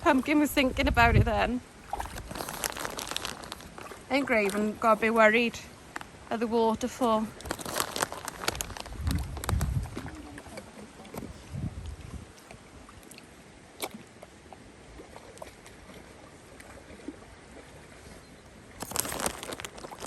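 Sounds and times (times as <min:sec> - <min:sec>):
water rushing: 0:00.0 - 0:20.0
dog paddling and splashing: 0:01.7 - 0:06.2, 0:18.8 - 0:20.0.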